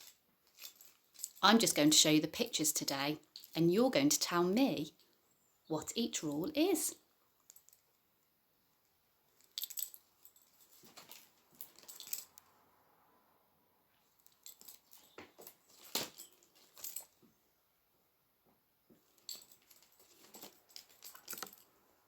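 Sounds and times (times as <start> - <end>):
short rustles: 9.4 - 12.4, 19.0 - 21.7.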